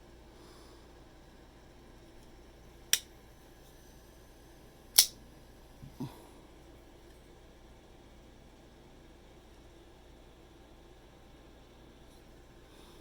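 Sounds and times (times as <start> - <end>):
knife blade metallic clicks: 5.0 - 5.2.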